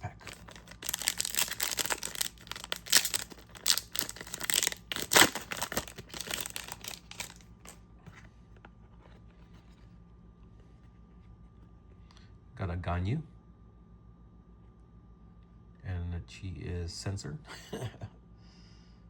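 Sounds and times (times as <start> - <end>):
wrapper being torn and crinkled: 0.0 - 7.5.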